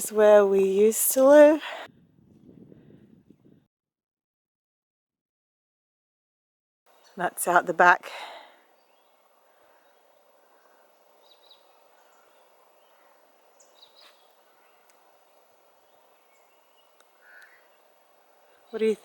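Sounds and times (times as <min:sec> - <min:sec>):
distant bird chirps: 0:06.9 - 0:19.0.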